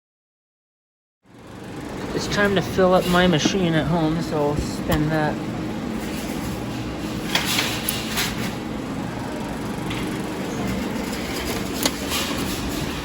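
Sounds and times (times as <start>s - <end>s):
busy arcade din: 2.0s - 6.0s.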